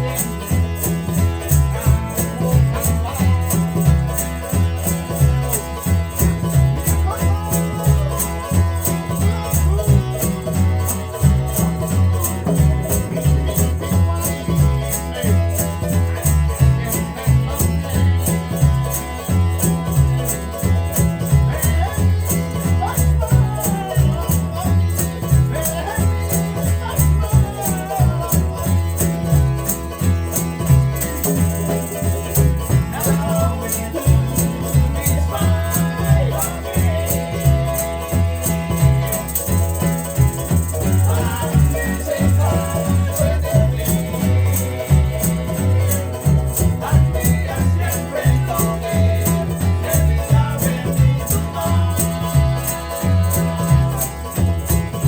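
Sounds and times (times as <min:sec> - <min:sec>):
deep bass line: 0:00.0 - 0:55.0
group singing: 0:00.0 - 0:55.0
plucked strings: 0:00.0 - 0:55.0
shaker beat: 0:00.0 - 0:55.0.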